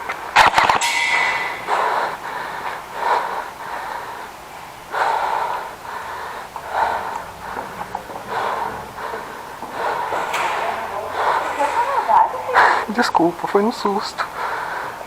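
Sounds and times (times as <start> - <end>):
person breathing heavily: 0.0 - 15.0.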